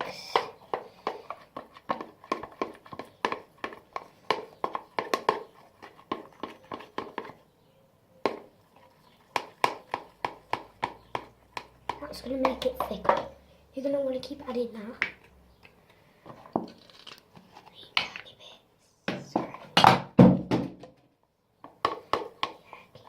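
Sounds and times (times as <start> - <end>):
utensil stirring slime: 0.0 - 15.2, 21.7 - 23.0.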